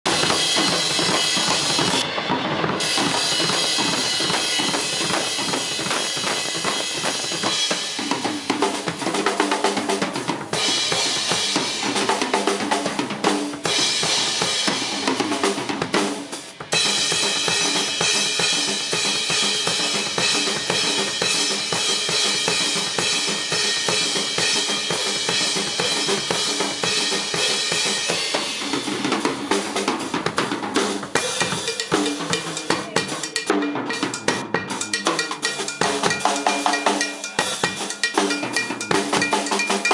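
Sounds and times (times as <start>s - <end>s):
ringing cymbals: 0.1s - 8.6s, 31.2s - 39.9s.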